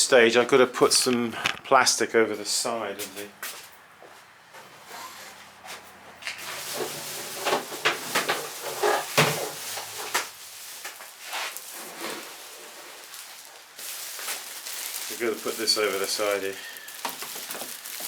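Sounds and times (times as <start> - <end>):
plastic sheet rustling and crinkling: 6.4 - 18.0.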